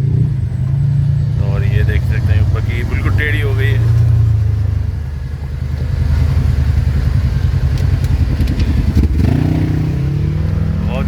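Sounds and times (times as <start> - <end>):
buggy engine running: 0.0 - 11.0.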